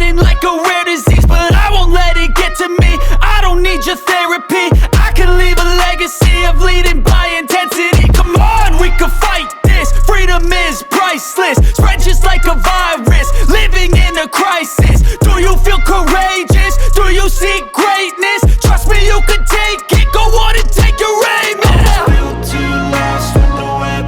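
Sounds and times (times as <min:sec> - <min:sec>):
hip-hop music with heavy bass beat: 0:00.0 - 0:24.0
vocals over a beat: 0:00.0 - 0:24.0.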